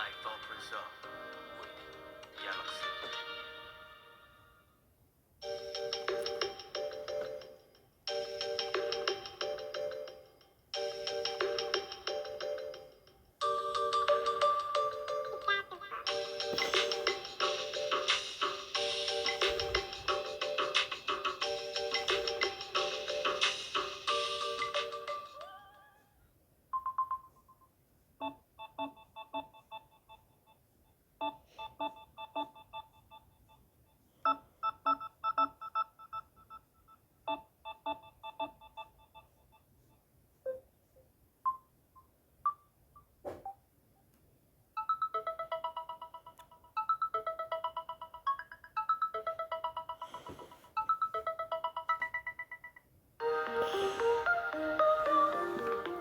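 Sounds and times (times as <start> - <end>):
bell-like ringtone tune: 5.4 - 26.0, 44.8 - 56.0
loud full ringtone: 5.4 - 26.0, 44.8 - 56.0
fast trilling ringtone: 50.8 - 56.0.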